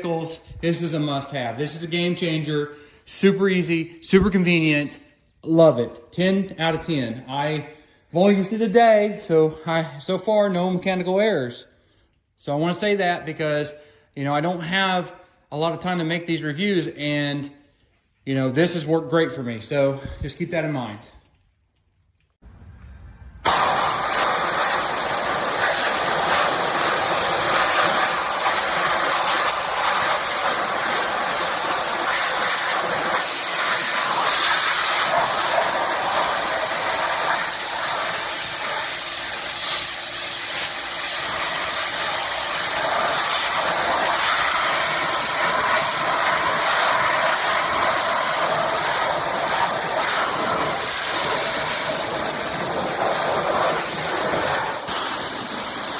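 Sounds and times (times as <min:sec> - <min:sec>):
pressure washer water jet hissing: 0:23.4 - 0:55.9.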